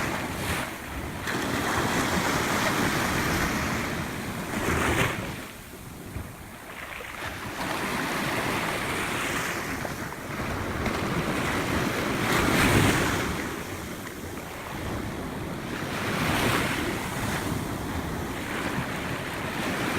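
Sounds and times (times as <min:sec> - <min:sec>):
wind rumble on microphone: 0:00.0 - 0:19.9.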